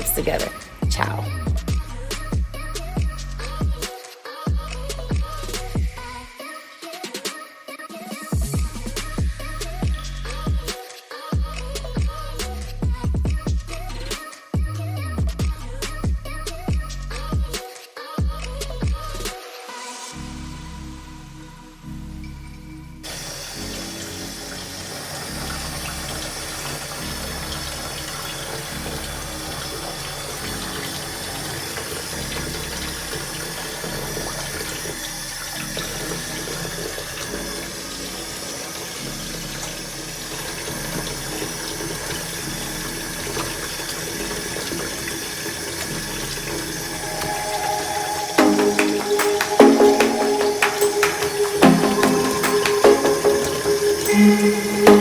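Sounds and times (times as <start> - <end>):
music: 0.0 - 55.0
tap water running into sink: 23.0 - 55.0.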